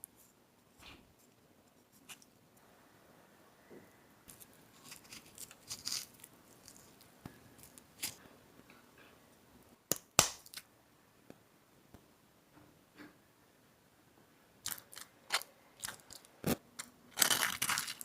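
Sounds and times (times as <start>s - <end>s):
crinkling: 4.3s - 8.2s, 14.6s - 18.0s.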